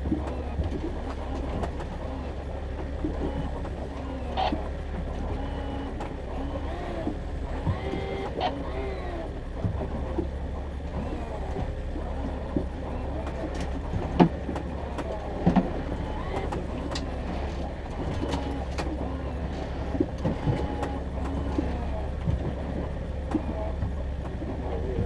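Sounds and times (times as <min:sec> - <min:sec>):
boat motor humming: 0:00.0 - 0:25.0.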